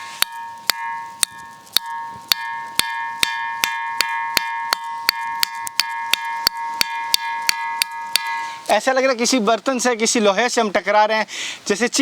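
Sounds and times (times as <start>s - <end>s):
ringing rock struck: 0.0s - 8.8s.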